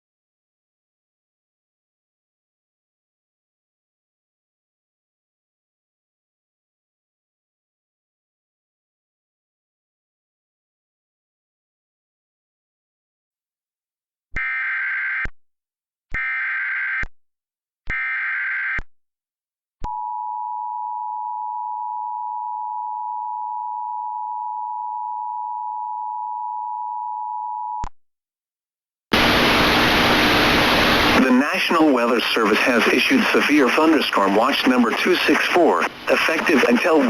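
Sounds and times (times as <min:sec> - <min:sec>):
static hiss: 0:29.2 - 0:37.0.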